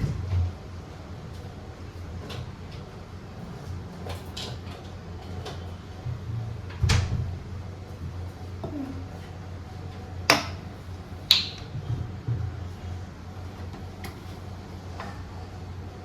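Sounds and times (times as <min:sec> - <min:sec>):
steady low hum: 0:00.0 - 0:16.0
clicks and knocks of cupboards: 0:06.7 - 0:07.3.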